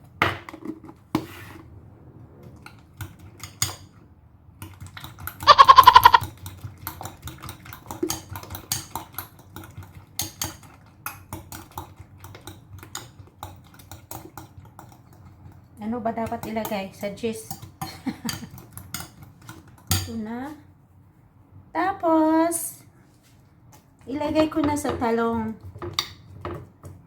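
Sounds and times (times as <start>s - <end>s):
animal bleat: 5.5s - 6.2s.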